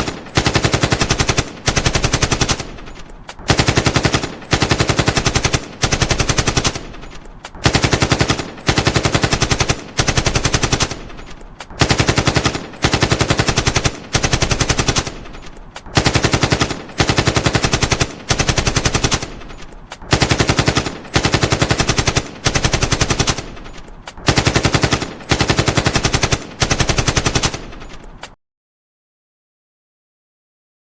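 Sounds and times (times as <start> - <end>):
assault rifle automatic bursts: 0.0 - 28.3.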